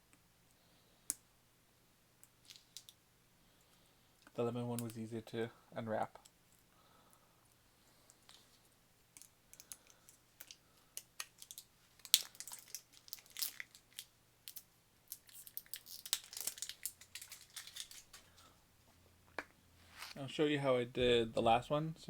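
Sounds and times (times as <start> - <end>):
sweet packaging crinkling: 9.2 - 18.5.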